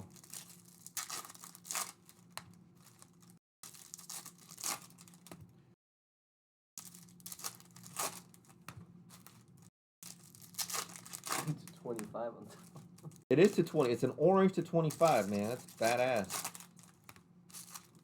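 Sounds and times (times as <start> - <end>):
foil wrapper tearing: 0.0 - 5.4, 6.8 - 12.7, 14.8 - 18.0
cards rustling: 10.1 - 18.0.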